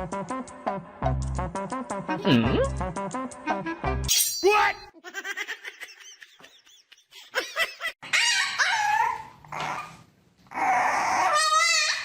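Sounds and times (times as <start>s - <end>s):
dog whining and yelping: 8.0s - 12.0s.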